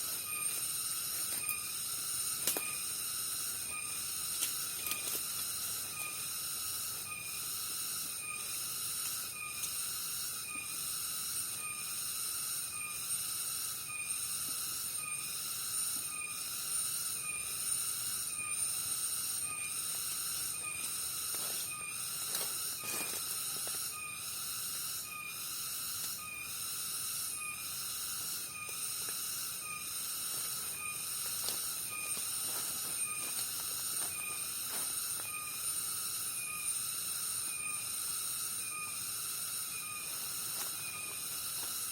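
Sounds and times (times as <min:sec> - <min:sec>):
insect chorus buzzing: 0:00.0 - 0:41.9
pulsing insect call: 0:00.0 - 0:41.9.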